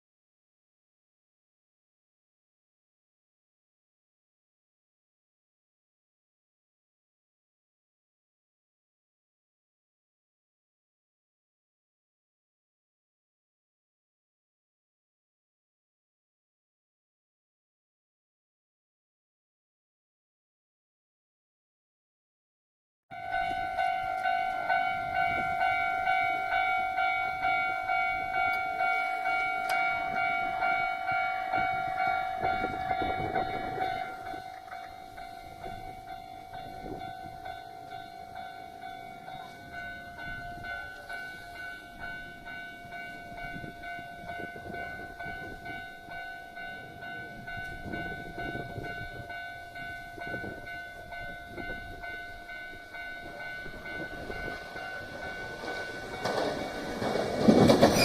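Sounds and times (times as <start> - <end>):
railroad crossing bell ringing: 23.1 - 58.0.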